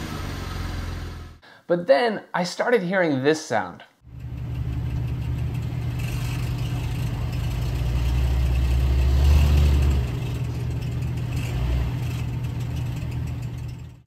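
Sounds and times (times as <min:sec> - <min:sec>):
car engine running: 0:04.0 - 0:14.0
rattly exhaust: 0:04.0 - 0:14.0.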